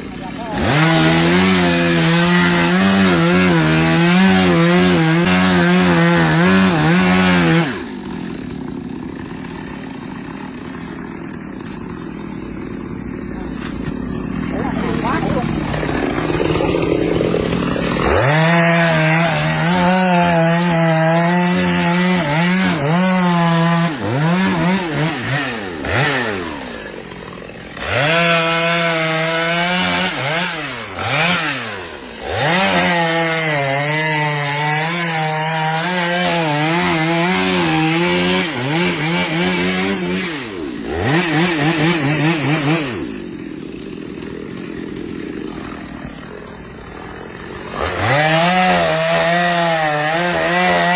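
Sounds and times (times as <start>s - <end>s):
chainsaw cutting tree: 0.0s - 50.9s.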